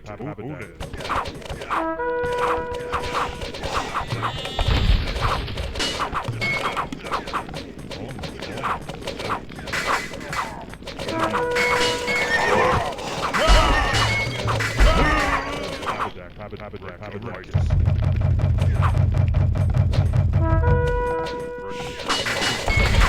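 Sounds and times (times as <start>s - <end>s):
warbling tone: 2.3s - 16.2s.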